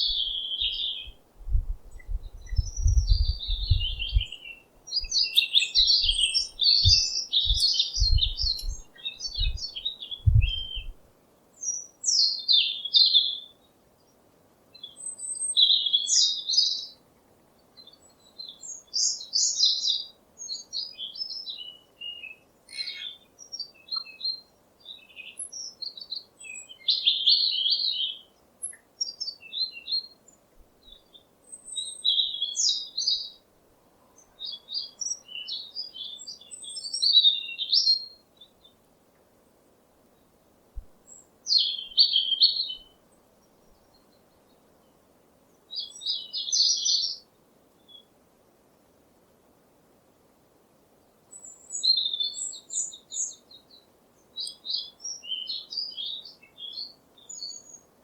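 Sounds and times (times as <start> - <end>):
songbirds chirping: 0.0 - 48.2, 50.2 - 58.0
low thumps: 1.4 - 4.3, 10.2 - 10.9.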